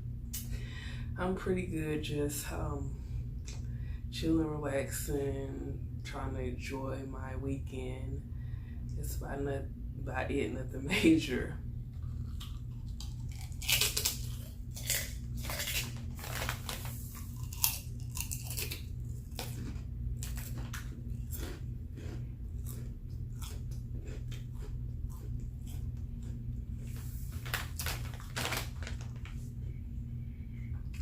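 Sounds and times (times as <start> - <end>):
crunchy chewing: 11.9 - 28.7.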